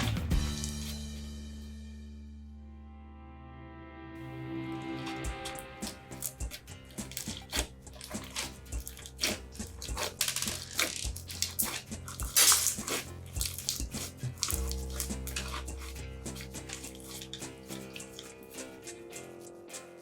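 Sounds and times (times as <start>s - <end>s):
soft background music: 0.0s - 20.0s
slime squelching: 4.8s - 20.0s.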